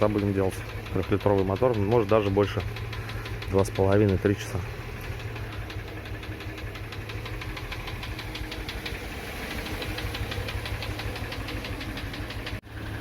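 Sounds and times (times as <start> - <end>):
engine idling with metallic knock: 0.0 - 13.0.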